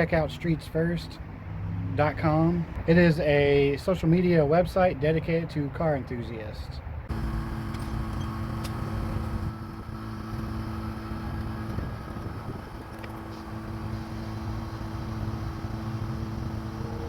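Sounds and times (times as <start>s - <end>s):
low road rumble: 6.4s - 17.0s
car engine drone: 7.1s - 17.0s.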